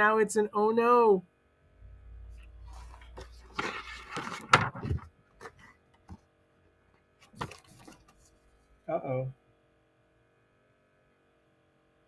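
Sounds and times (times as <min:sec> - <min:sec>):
paper page rustling: 0:02.6 - 0:06.2, 0:07.2 - 0:08.5.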